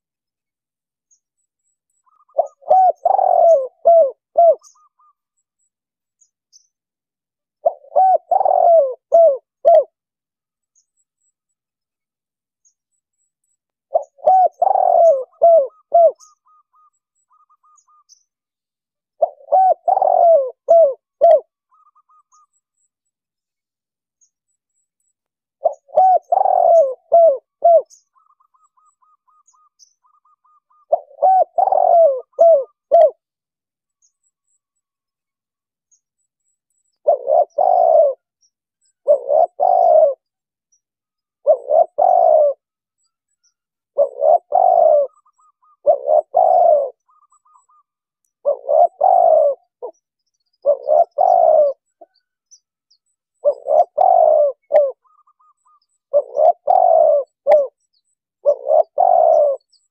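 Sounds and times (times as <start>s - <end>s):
dove cooing: 2.1s - 5.2s, 7.6s - 10.0s, 13.9s - 18.2s, 19.2s - 22.6s, 25.6s - 33.3s, 37.0s - 40.3s, 41.4s - 42.7s, 43.9s - 52.2s, 53.4s - 57.8s, 58.4s - 59.9s.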